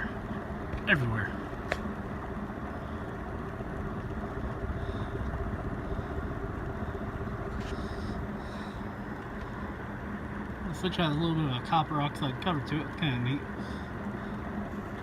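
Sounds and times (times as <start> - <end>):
ceiling fan running: 0.0 - 15.0.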